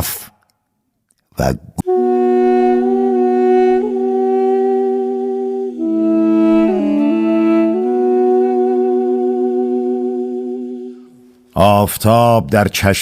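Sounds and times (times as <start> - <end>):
sustained held chords: 1.8 - 11.4.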